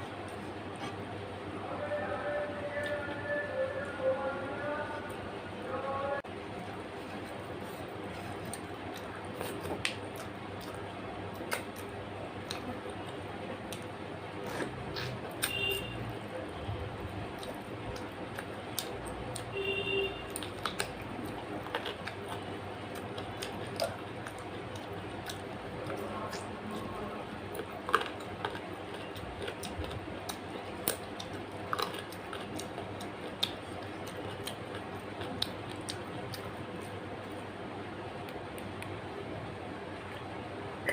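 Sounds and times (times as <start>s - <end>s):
chewing with mouth clicks: 6.6s - 19.6s, 20.2s - 37.6s.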